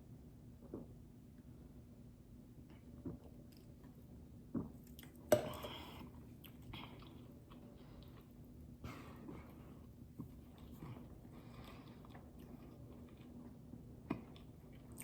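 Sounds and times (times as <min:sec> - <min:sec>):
person chewing: 0:04.8 - 0:08.4, 0:10.2 - 0:15.0.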